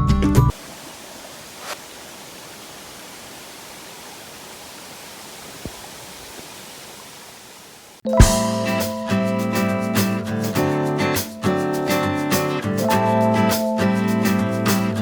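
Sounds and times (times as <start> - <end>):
waterfall rushing: 0.5 - 8.0
strummed acoustic guitar music: 8.1 - 15.0.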